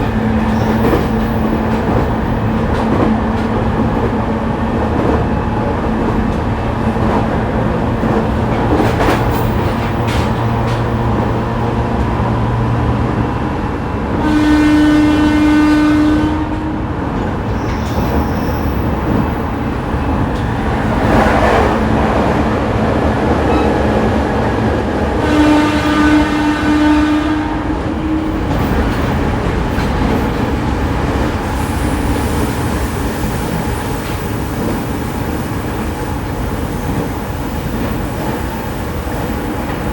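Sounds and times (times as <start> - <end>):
track clatter: 0.0 - 14.2, 16.4 - 26.7, 27.6 - 39.9
wheel and rail rumble: 0.0 - 39.9
train horn: 14.1 - 17.0, 25.0 - 29.2.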